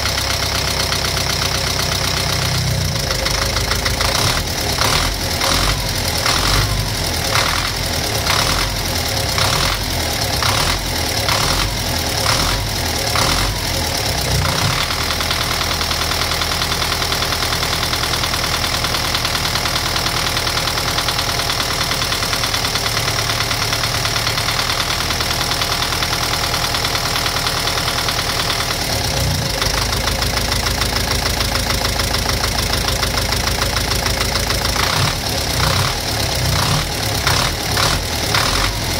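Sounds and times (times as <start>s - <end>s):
engine running with a knock: 4.0s - 13.6s.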